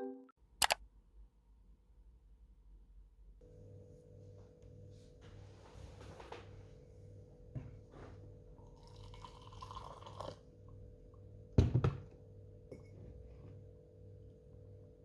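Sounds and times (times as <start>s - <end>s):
liquid pouring into container: 8.6s - 10.4s.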